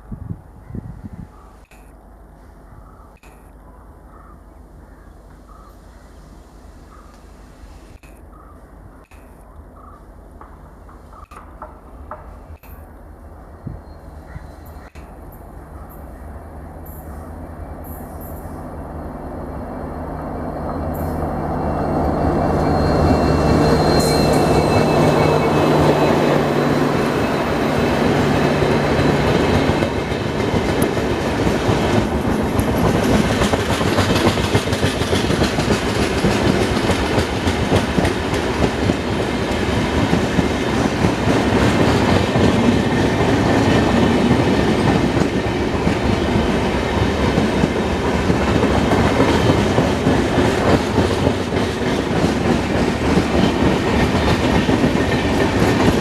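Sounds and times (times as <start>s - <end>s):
train wheels clattering over rail joints: 25.8s - 56.0s.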